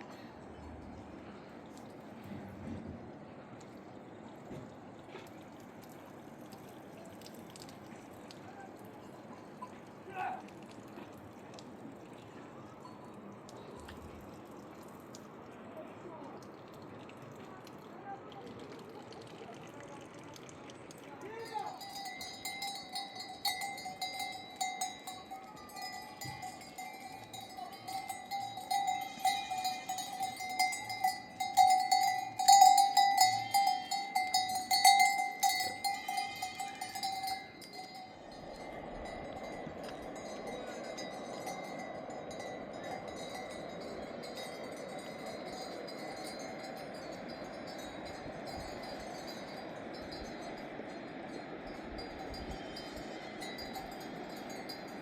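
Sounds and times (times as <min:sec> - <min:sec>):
metal livestock bells clanking: 0:21.2 - 0:55.0.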